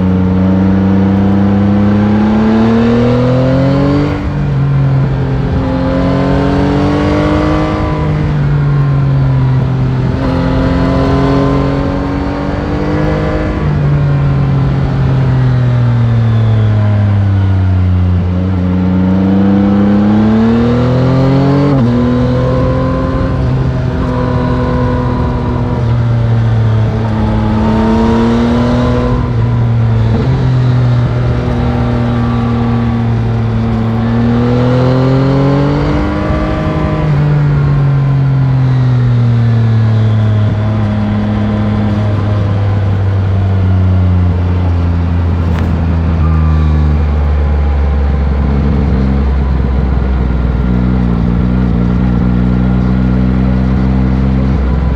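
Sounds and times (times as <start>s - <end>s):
motorcycle engine revving: 0.0s - 54.9s
wind rush: 19.4s - 39.2s.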